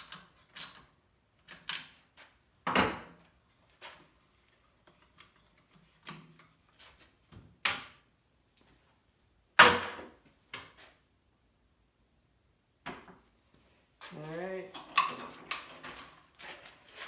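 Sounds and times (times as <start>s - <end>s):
metal tools clanking on workbench: 14.7s - 16.2s.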